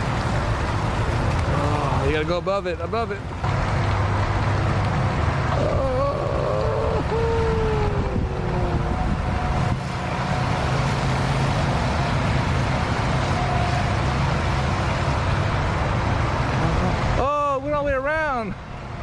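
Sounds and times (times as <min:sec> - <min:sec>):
wind buffeting microphone: 0:03.8 - 0:18.0.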